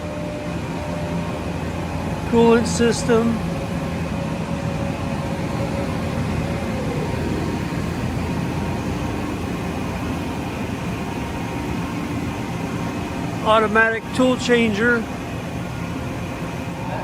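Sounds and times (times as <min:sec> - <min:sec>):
machine hum: 0:00.0 - 0:17.0.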